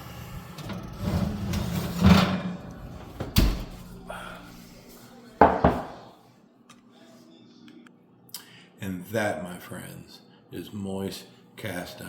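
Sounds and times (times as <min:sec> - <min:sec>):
skillet knocking: 0:05.4 - 0:06.0
kitchen thuds: 0:05.4 - 0:06.1.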